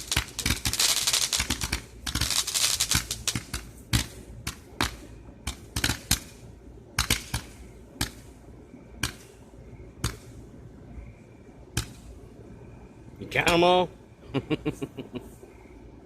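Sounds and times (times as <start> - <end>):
fireworks cake firing cracks: 0.0 - 8.4, 9.0 - 9.4, 10.0 - 10.4, 11.8 - 12.2.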